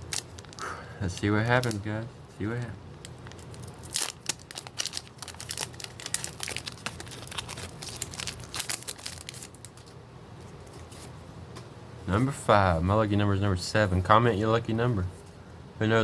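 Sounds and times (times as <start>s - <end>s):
foil wrapper tearing and crinkling: 0.0s - 0.7s, 1.4s - 1.8s, 3.0s - 9.9s.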